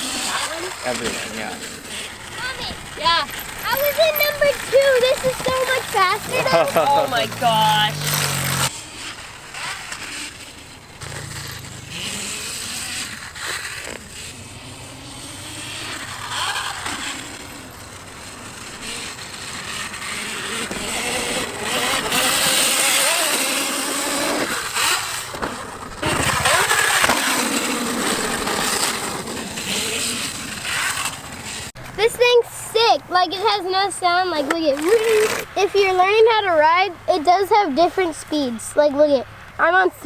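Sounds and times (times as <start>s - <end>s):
tyre noise on dirt: 0.0s - 40.0s
rushing wind: 14.5s - 33.9s.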